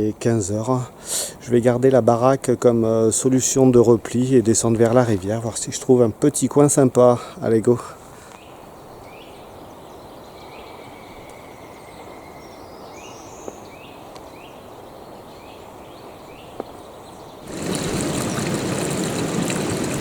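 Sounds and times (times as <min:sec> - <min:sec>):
outdoor background noise: 0:00.0 - 0:20.0
small birds chirping: 0:06.8 - 0:20.0.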